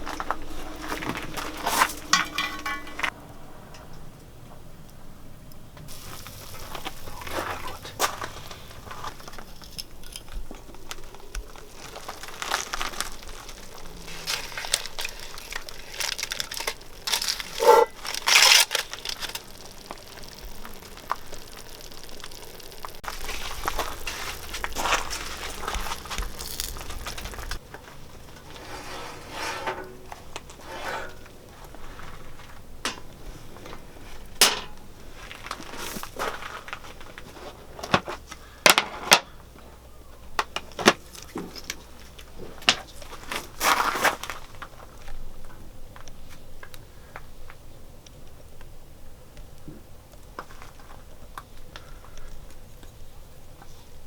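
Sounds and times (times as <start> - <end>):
crinkling and rustling handling: 0.0 - 3.2, 5.8 - 48.3.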